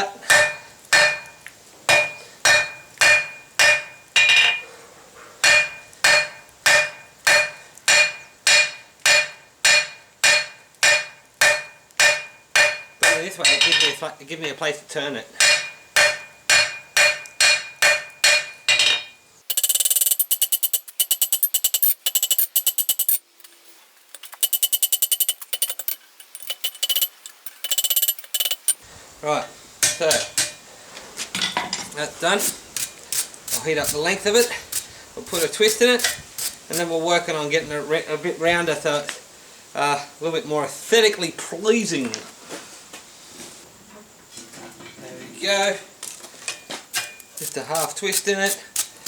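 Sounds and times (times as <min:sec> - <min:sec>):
hammer ringing on anvil: 0:00.3 - 0:01.3.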